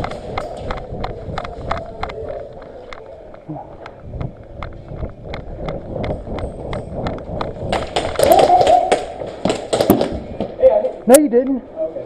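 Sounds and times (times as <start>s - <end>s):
running footsteps: 0.0s - 11.0s
person shouting: 8.2s - 9.1s.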